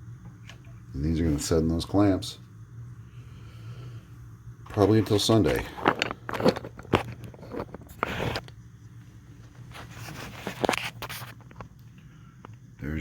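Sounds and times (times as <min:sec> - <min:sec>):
low steady hum: 0:00.0 - 0:13.0
handling clicks and scrape: 0:04.7 - 0:08.6, 0:09.8 - 0:11.8.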